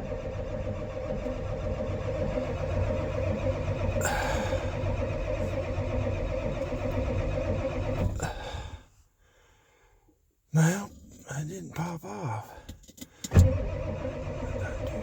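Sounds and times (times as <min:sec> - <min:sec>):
starter cranking engine: 0:00.0 - 0:08.7, 0:13.2 - 0:15.0.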